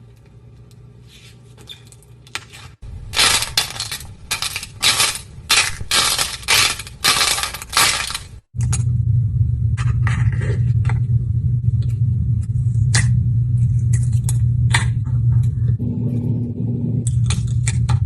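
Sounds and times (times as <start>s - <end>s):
crunchy slime crackling: 2.8s - 8.4s.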